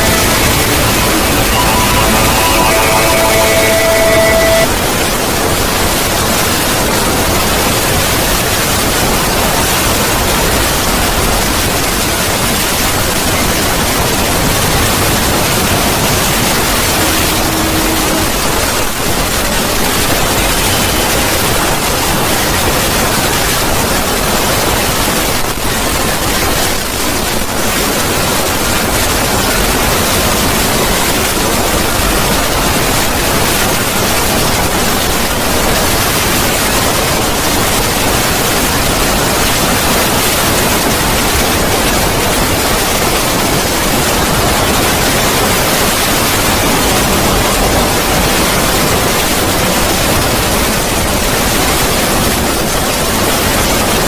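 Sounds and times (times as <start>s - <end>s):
static hiss: 0.0s - 4.8s, 13.0s - 24.7s.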